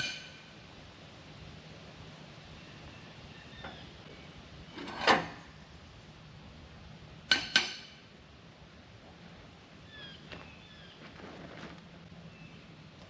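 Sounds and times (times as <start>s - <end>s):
metal clanking on steel frame: 4.8s - 5.5s, 7.2s - 8.2s.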